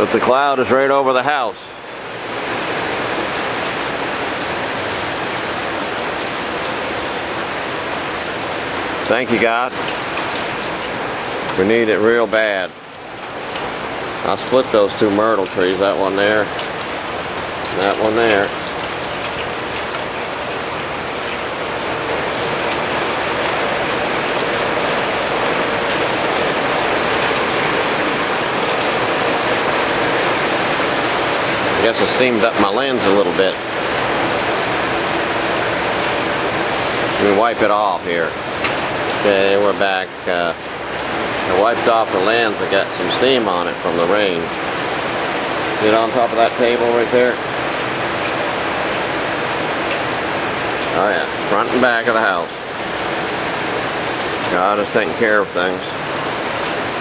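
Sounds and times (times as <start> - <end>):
rain pouring on a roof: 0.0 - 57.0.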